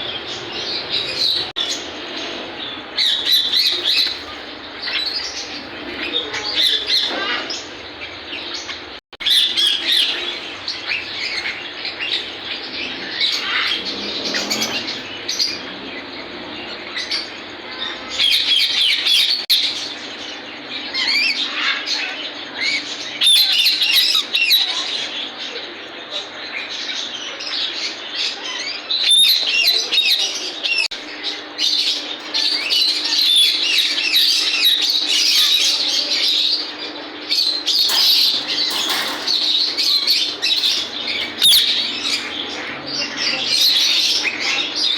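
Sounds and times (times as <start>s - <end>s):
parrots chirping and squawking: 0.0s - 25.2s, 26.6s - 44.9s.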